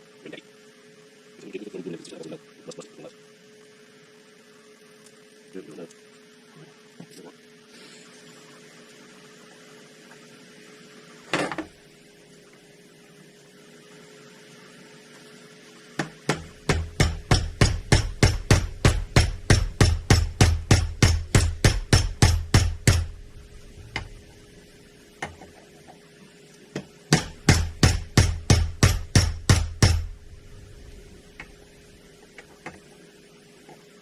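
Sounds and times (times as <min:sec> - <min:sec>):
rapid hammer blows on metal: 0:16.0 - 0:23.2, 0:26.8 - 0:30.2.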